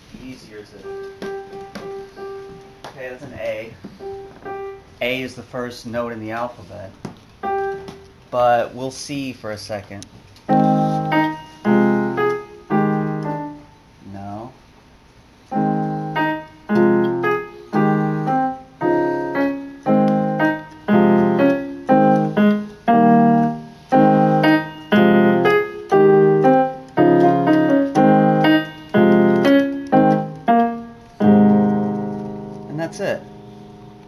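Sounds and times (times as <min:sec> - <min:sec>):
electronic piano slow tune: 0:00.0 - 0:05.2, 0:07.4 - 0:08.3, 0:10.4 - 0:14.0, 0:15.3 - 0:34.0.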